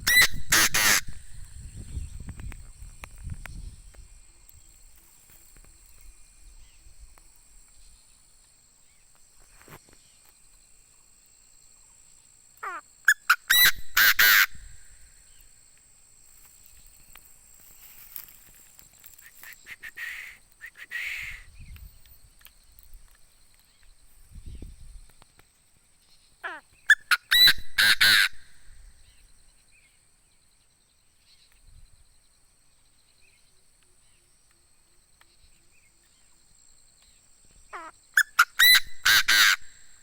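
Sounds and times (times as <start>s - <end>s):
bird harsh calls: 0.0s - 1.8s, 12.6s - 15.1s, 19.1s - 21.7s, 26.4s - 28.7s, 37.7s - 40.0s.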